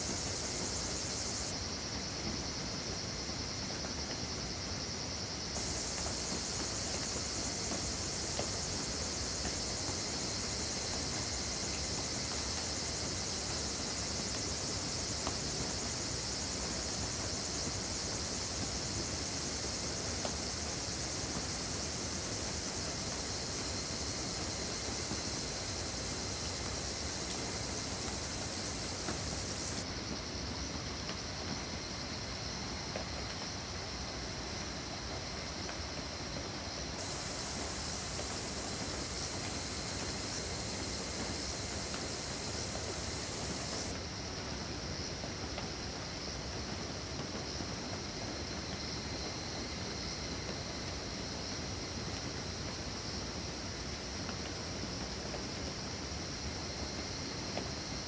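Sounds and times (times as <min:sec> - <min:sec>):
rain falling on wood: 0:05.6 - 0:10.0, 0:24.2 - 0:29.8, 0:37.0 - 0:43.9.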